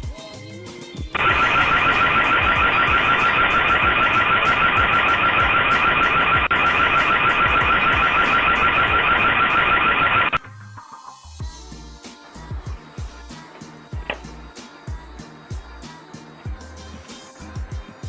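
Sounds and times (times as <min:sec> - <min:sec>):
warbling electronic alarm siren: 0:01.2 - 0:10.4.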